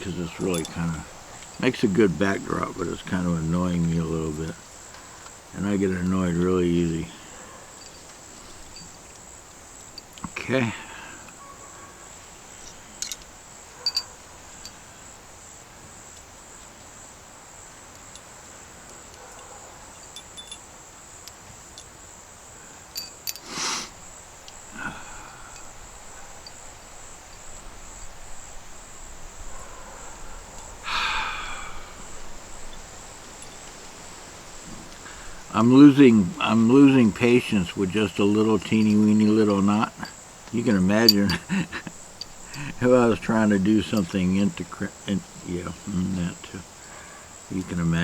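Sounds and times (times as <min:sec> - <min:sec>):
hands rustling cordage: 0:00.0 - 0:06.8, 0:12.4 - 0:14.9, 0:32.5 - 0:44.7
crickets chirping: 0:00.0 - 0:48.0.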